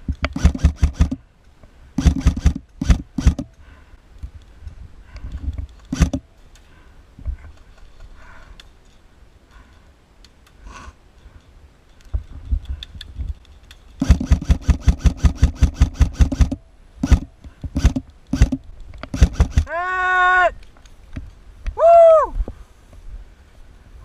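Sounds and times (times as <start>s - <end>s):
airsoft gun full-auto bursts: 0.2s - 1.2s, 2.0s - 3.5s, 5.9s - 6.2s, 14.0s - 19.7s.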